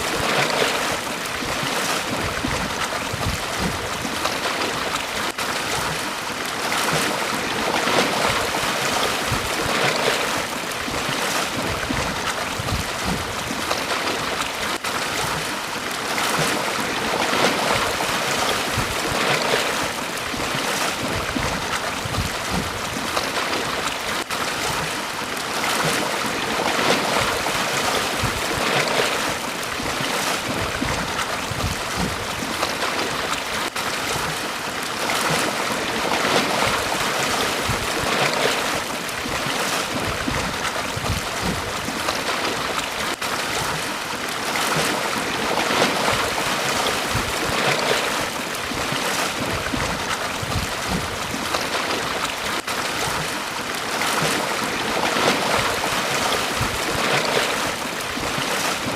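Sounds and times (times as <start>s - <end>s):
sea waves breaking on beach: 0.0s - 58.9s
wind rumble on microphone: 1.3s - 4.9s, 8.0s - 9.9s, 10.8s - 14.4s, 18.6s - 19.3s, 20.2s - 23.2s, 29.8s - 33.1s, 36.4s - 38.2s, 39.2s - 42.6s, 45.8s - 47.7s, 48.6s - 52.2s, 55.2s - 57.2s.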